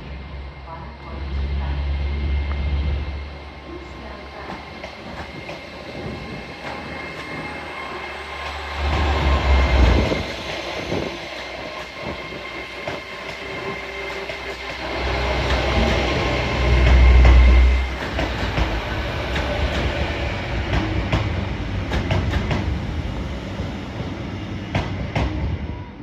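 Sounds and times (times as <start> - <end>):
train rumbling: 0.0 - 26.0
train wheels clicking over rail joints: 8.4 - 22.9.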